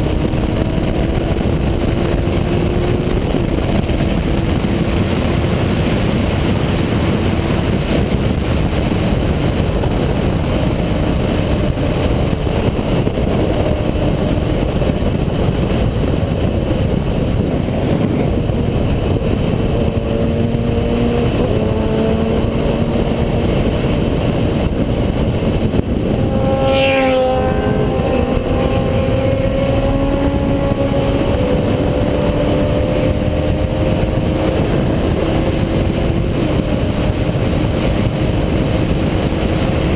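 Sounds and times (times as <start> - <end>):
motorcycle engine running hard: 0.0 - 39.9.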